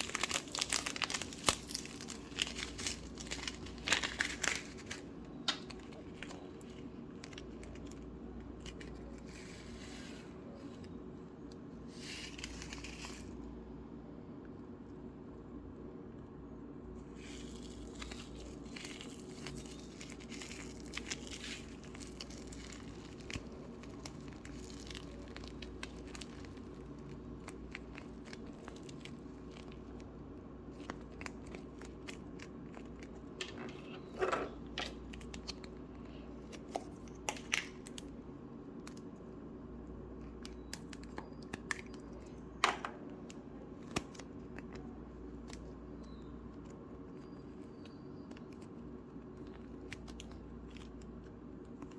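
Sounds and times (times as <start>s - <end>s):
slime stretched and squeezed: 0.0s - 7.9s, 17.1s - 38.2s
faint steady hum: 0.0s - 51.9s.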